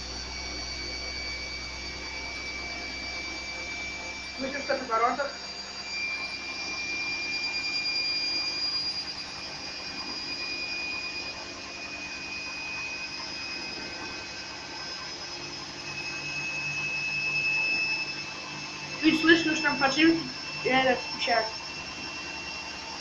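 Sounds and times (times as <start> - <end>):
washing machine spinning with whine: 0.0 - 23.0.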